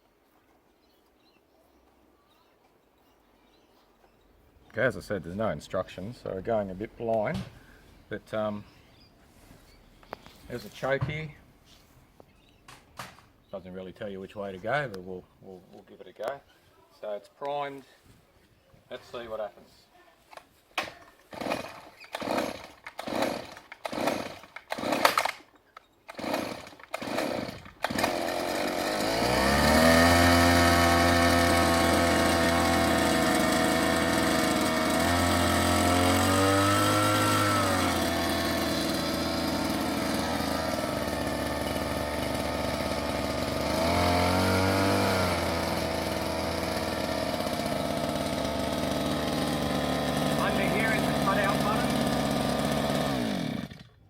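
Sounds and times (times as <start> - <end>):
pull-start cord strokes: 21.1 - 25.4, 26.1 - 53.9
small two-stroke engine revving: 21.3 - 25.4, 26.1 - 54.0.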